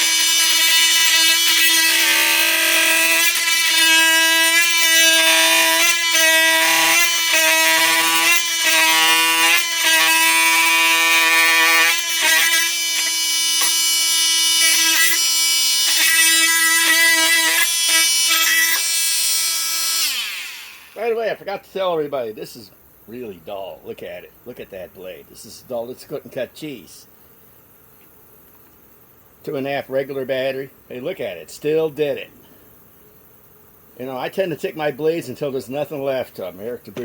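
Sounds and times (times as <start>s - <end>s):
blade grinding through a cut: 0.0s - 21.0s
oscillating multi-tool whining: 0.0s - 21.1s.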